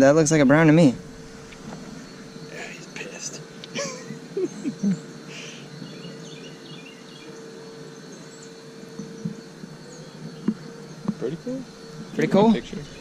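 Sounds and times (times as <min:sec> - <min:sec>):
faint steady drone: 0:00.0 - 0:13.0
bird chirps: 0:00.9 - 0:13.0.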